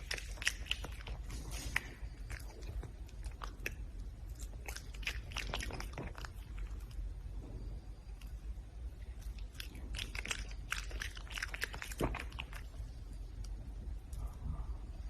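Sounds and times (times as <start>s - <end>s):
animal chewing and crunching food: 0.0s - 15.0s
low steady rumble: 0.0s - 15.0s.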